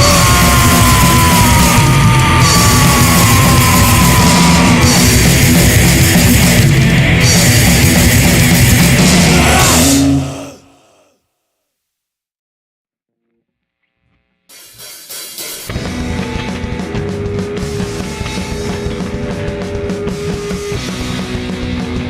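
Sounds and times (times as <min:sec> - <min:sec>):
punk band playing distorted: 0:00.0 - 0:10.6, 0:14.5 - 0:22.0.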